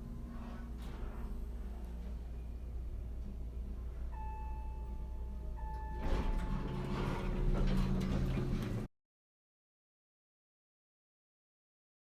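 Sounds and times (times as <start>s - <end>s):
elevator hum: 0.0s - 8.9s
elevator doors sliding open: 0.1s - 2.3s, 5.6s - 8.9s
elevator chime: 4.0s - 8.9s.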